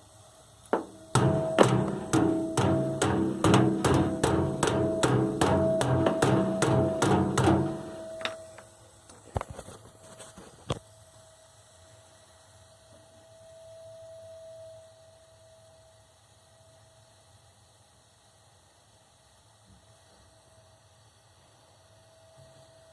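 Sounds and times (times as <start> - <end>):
water heater knocking: 0.7 - 8.5
steady hum: 0.7 - 8.7.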